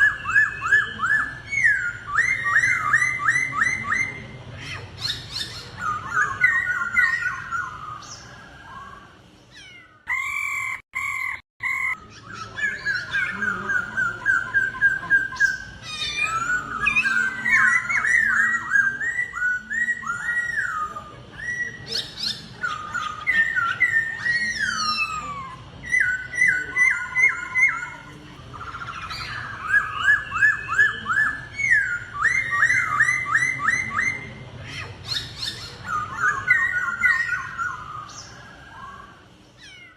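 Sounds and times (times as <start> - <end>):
bird singing loud whistled notes: 0.0 - 34.4, 35.0 - 39.7.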